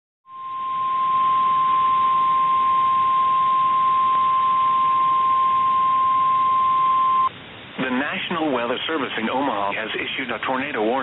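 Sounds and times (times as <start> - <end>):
steady alarm tone: 0.2 - 7.3
radio hiss: 7.7 - 11.0.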